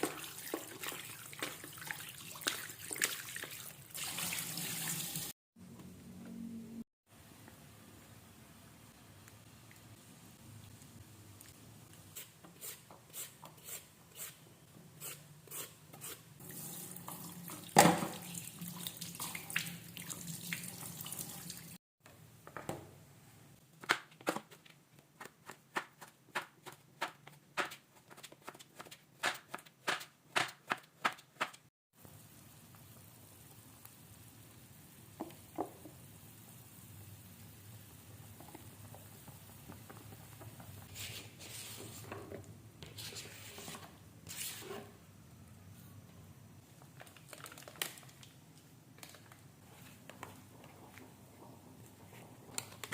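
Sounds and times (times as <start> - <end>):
running water from tap: 3.5 - 5.3, 16.4 - 21.8.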